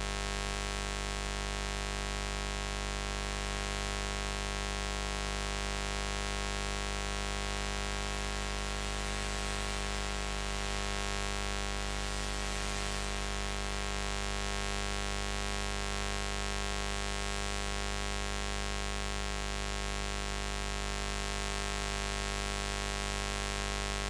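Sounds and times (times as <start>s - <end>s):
hiss: 9.0s - 10.4s, 12.0s - 13.3s.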